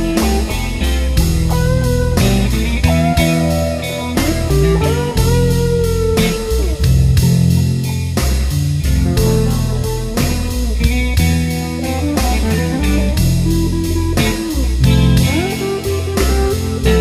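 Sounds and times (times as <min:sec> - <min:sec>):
bass guitar: 0:00.0 - 0:17.0
drums: 0:00.0 - 0:17.0
lead electric guitar: 0:00.0 - 0:17.0.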